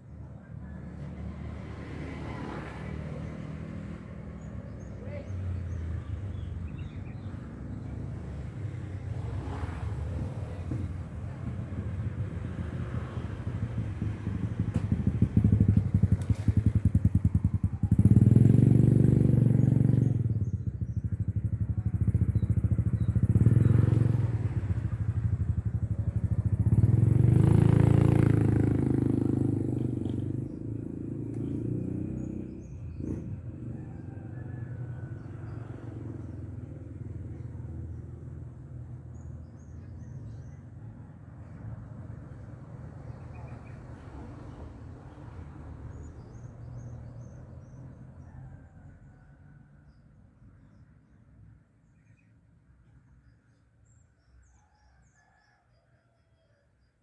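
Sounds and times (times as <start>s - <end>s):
motorcycle engine running: 10.2s - 40.5s.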